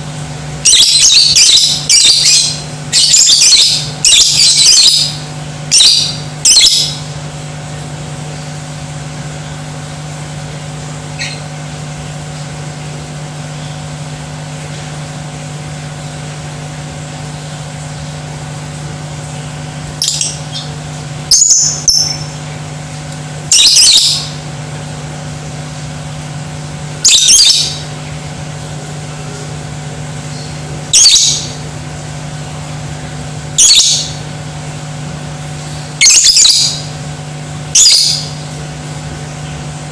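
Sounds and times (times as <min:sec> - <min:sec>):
steady low hum: 0:00.0 - 0:39.9
lovebird high-pitched calls: 0:00.6 - 0:07.1, 0:11.2 - 0:11.5, 0:20.0 - 0:22.4, 0:23.5 - 0:24.4, 0:27.0 - 0:27.9, 0:30.3 - 0:31.6, 0:33.6 - 0:34.2, 0:35.7 - 0:37.0, 0:37.7 - 0:38.4.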